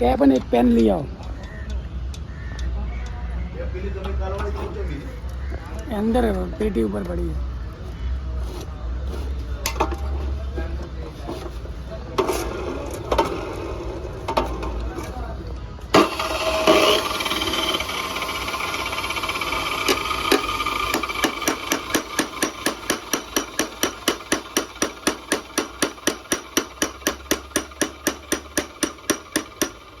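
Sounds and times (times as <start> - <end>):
steady mechanical whir: 9.8 - 30.0
hammer strikes on metal: 19.8 - 29.9.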